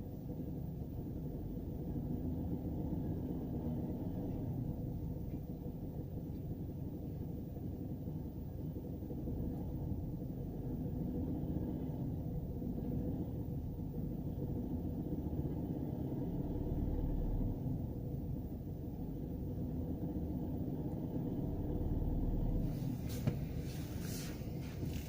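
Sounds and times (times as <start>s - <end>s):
car engine rumble in cabin: 0.0s - 25.0s.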